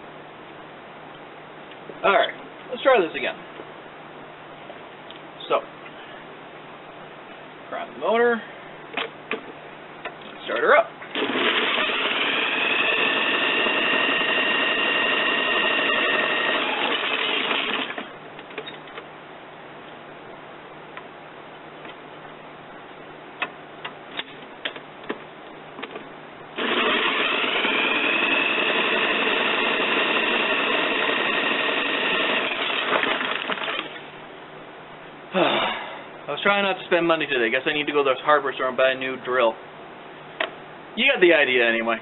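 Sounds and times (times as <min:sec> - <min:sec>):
power drill whining: 0:11.1 - 0:18.1, 0:26.6 - 0:34.1.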